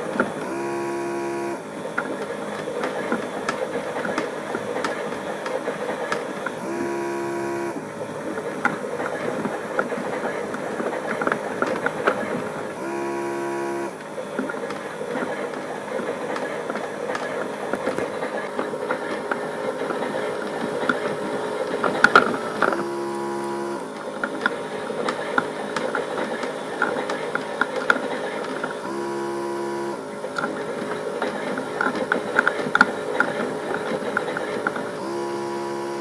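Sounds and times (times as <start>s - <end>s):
steady buzzing hum: 0.0s - 36.0s
toy washing machine gear rattling: 1.8s - 6.9s, 7.9s - 12.8s, 14.0s - 22.9s, 23.8s - 28.9s, 30.2s - 35.2s.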